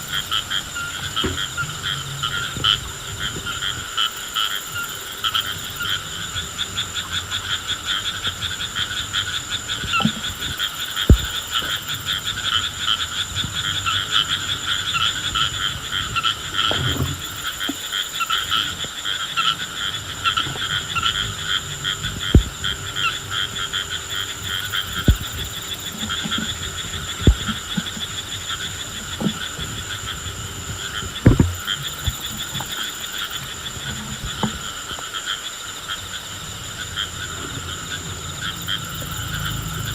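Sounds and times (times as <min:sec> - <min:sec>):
frogs calling in chorus: 0:00.0 - 0:39.9
short dull thumps: 0:10.0 - 0:11.8, 0:22.2 - 0:22.6, 0:24.8 - 0:28.2, 0:30.7 - 0:32.8.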